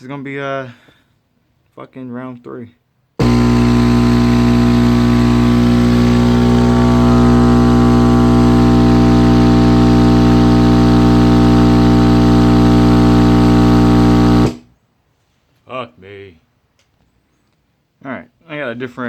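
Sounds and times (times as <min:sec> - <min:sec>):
loud mains hum from subwoofer: 0:03.2 - 0:14.7.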